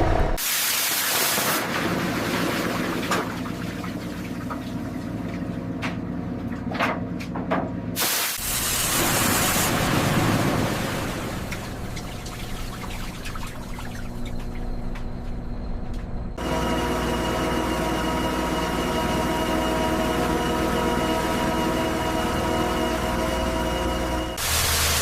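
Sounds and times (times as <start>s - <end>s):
low machinery hum: 1.7s - 25.0s
loud spraying hiss: 8.0s - 10.0s.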